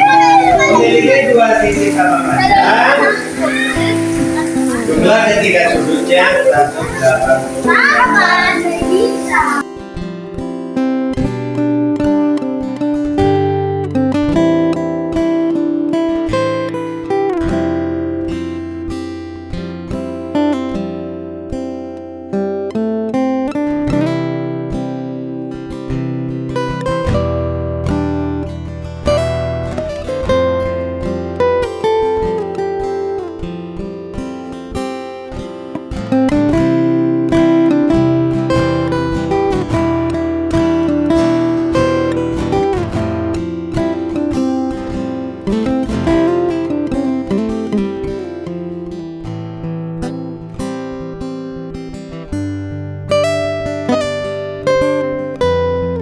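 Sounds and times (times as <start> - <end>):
acoustic guitar music: 0.0 - 56.0.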